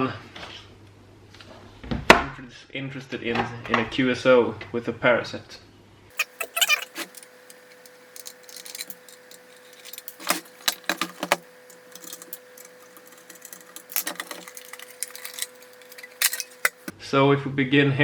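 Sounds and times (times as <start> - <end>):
metallic clicks and clinks: 6.1 - 16.9.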